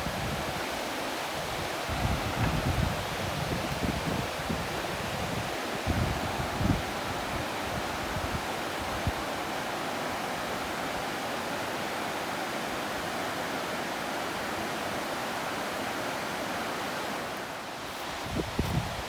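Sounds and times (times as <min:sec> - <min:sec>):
waterfall rushing: 0:00.0 - 0:18.4.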